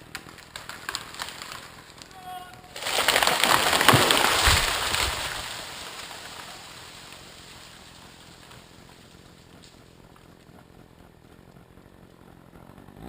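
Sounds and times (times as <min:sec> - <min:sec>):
tree trunk thudding on ground: 0:00.0 - 0:09.8
branches rustling: 0:00.0 - 0:12.5
branches swishing and breaking: 0:00.1 - 0:09.1.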